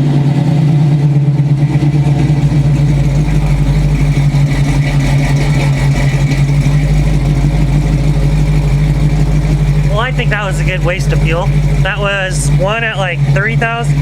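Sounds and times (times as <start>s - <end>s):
car engine idling: 0.0s - 14.0s.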